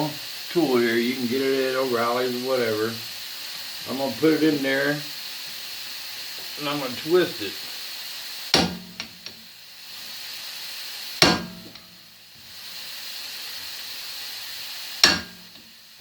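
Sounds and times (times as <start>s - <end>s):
steady hiss: 0.0s - 16.0s
sharp metal strikes: 8.5s - 9.2s, 11.2s - 12.0s, 15.0s - 15.6s.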